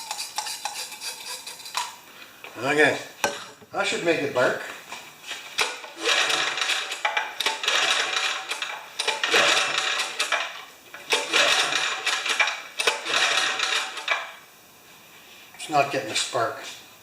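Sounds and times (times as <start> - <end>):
generator recoil starter pulls: 5.6 - 14.3.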